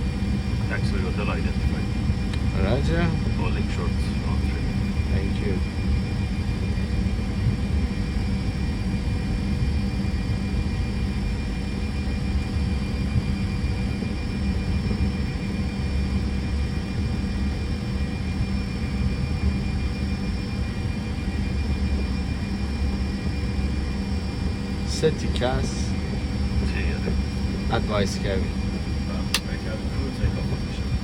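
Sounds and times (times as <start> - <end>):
aircraft engines idling: 0.0 - 9.4, 23.1 - 31.0.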